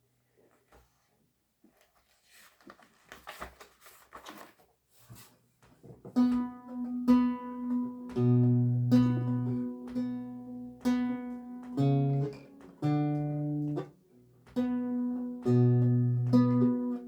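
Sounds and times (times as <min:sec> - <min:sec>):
soft clicks and rustles: 0:00.3 - 0:06.2
lute plucked notes: 0:06.1 - 0:17.0.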